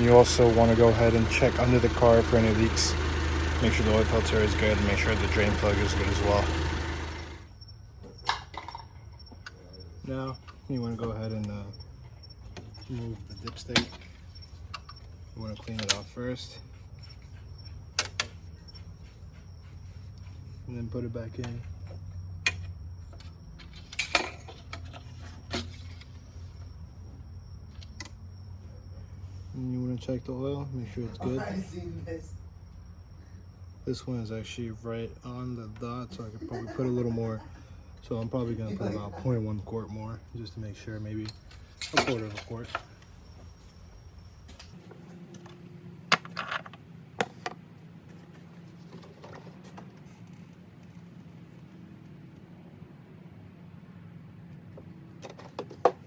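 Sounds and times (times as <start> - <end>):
steady low hum: 0.0 - 8.1
clicks and clinks of engine parts: 0.0 - 9.6, 10.4 - 18.8, 21.4 - 26.3, 41.0 - 43.5, 54.7 - 56.0.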